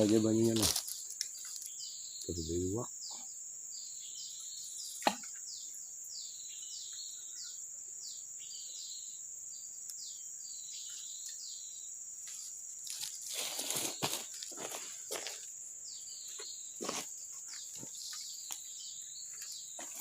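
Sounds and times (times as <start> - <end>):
insect falling chirps: 0.0 - 2.4, 12.2 - 15.5
insects droning: 0.0 - 20.0
rustling: 12.8 - 15.4.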